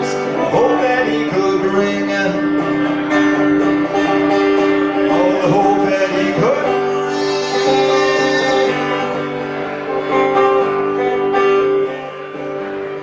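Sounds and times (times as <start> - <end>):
acoustic guitar strummed and picked: 0.0 - 13.0.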